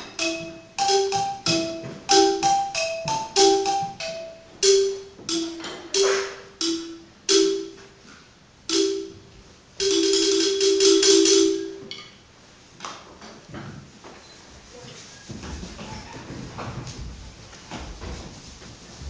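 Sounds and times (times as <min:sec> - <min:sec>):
xylophone played with mallets: 0:00.0 - 0:08.0, 0:08.7 - 0:12.2.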